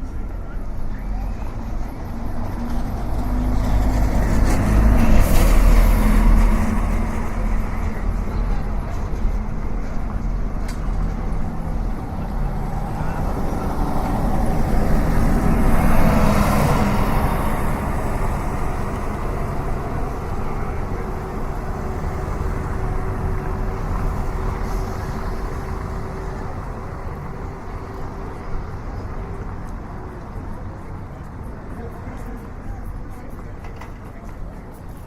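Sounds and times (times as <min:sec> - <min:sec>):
street traffic rumble: 0:00.0 - 0:35.0
vehicle passing close: 0:10.4 - 0:29.3.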